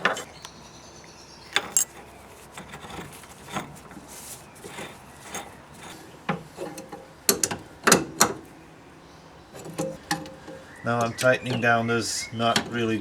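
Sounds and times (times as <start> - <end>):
metal clicks: 1.5 - 8.5
nut threading onto shaft: 1.5 - 8.5.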